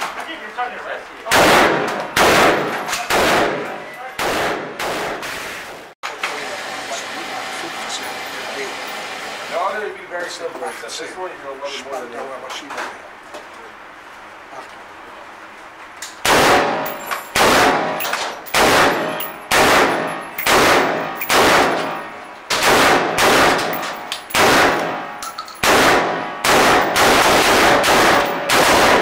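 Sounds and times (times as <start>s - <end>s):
gunshots echoing indoors: 1.3s - 5.6s, 16.2s - 29.0s.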